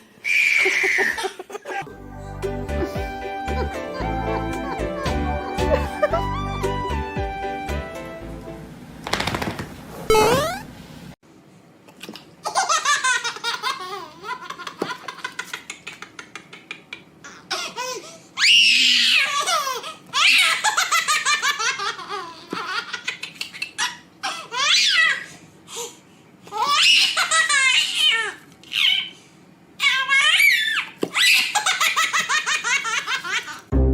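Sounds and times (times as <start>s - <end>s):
baby laughing: 0.4s - 1.9s, 12.4s - 18.2s, 19.0s - 25.3s, 26.5s - 29.2s, 29.8s - 33.7s.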